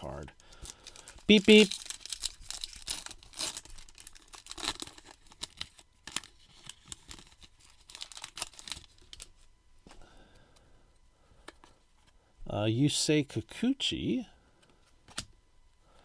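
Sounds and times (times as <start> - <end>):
plastic wrapper crinkling: 0.4 - 9.5.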